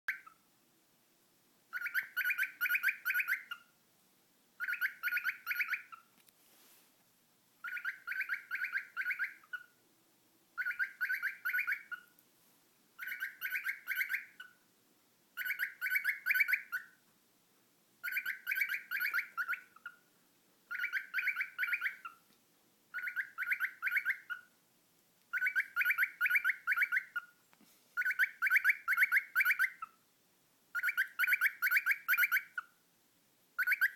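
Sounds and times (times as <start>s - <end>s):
cockatiel chirping: 0.1s - 0.4s, 1.7s - 3.8s, 4.6s - 6.1s, 7.6s - 9.8s, 10.6s - 12.2s, 13.0s - 14.6s, 15.4s - 17.0s, 18.0s - 20.1s, 20.7s - 22.2s, 22.9s - 24.5s, 25.3s - 27.4s, 28.0s - 30.0s, 30.7s - 32.8s, 33.6s - 33.9s.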